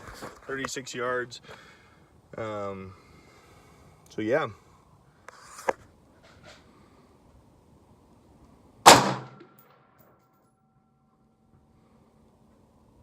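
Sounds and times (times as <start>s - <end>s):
gunshot crack: 8.8s - 9.7s.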